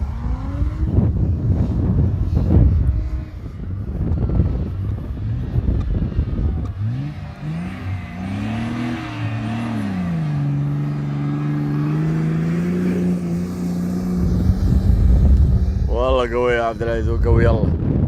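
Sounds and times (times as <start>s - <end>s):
off-road engine revving: 0.0s - 17.4s.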